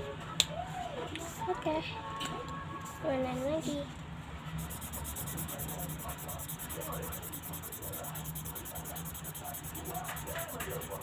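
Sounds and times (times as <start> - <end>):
marker pen rubbing on paper: 4.6 - 11.0.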